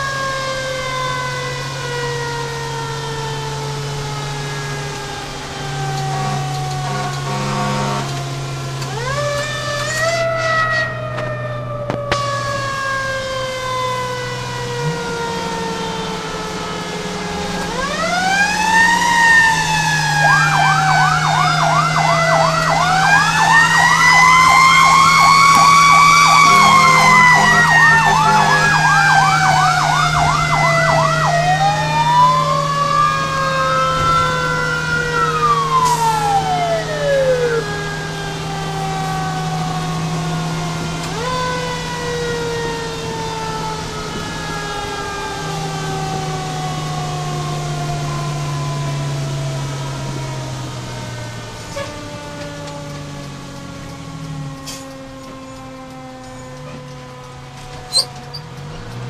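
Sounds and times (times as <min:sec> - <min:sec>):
fast sweeping siren: 0:00.0 - 0:59.0
fire engine siren winding: 0:00.0 - 0:59.0
truck engine drone: 0:00.0 - 0:59.0.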